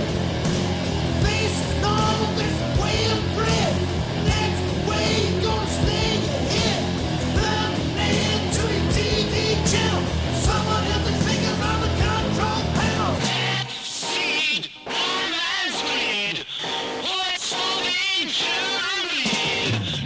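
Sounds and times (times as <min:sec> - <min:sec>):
steady drum beat: 0:00.0 - 0:13.6
electric guitar: 0:00.0 - 0:20.0
person singing: 0:01.2 - 0:20.0.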